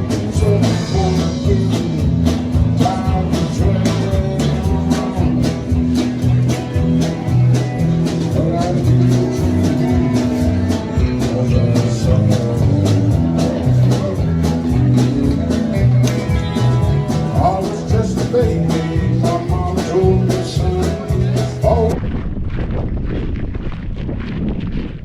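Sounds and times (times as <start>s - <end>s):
country rock song: 0.0s - 22.3s
wind on microphone: 21.9s - 25.0s.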